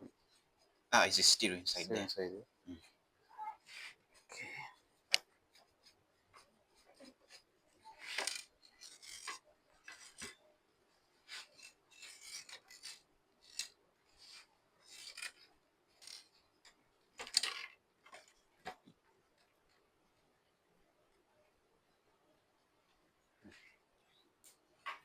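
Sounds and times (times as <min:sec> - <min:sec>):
hands and tools scraping parts: 0:05.5 - 0:10.4, 0:11.2 - 0:18.4.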